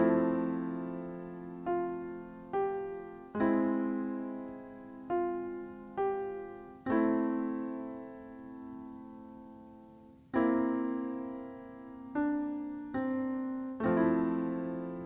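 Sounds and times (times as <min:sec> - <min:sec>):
slow solo piano: 0:00.0 - 0:15.0.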